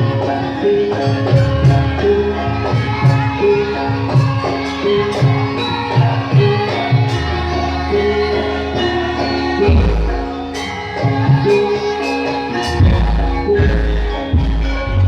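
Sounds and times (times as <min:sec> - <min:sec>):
live ensemble music: 0:00.0 - 0:15.0
percussion beat: 0:00.0 - 0:15.0
deep bass notes: 0:07.1 - 0:11.5, 0:12.7 - 0:15.0.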